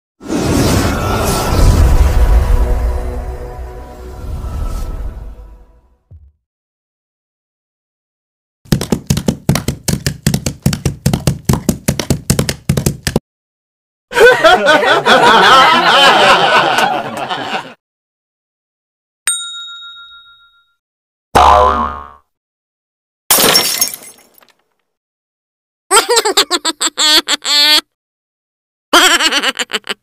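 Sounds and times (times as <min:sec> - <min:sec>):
rapid sharp knocks: 0:08.7 - 0:13.2
bright ding: 0:19.3 - 0:20.8.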